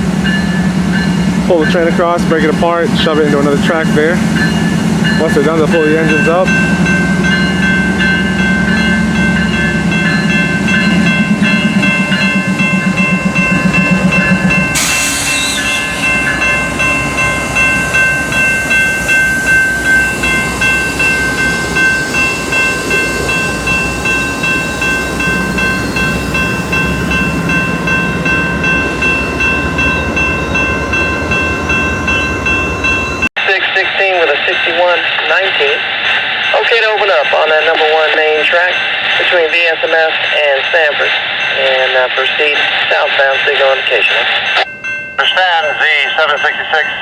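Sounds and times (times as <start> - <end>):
high ringing tones: 0.0 - 33.6.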